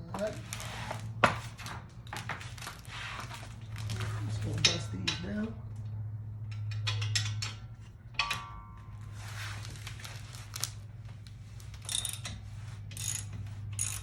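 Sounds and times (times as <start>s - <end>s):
low steady hum: 0.0s - 14.0s
metal tools clinking and scraping: 3.2s - 10.0s, 11.7s - 14.0s.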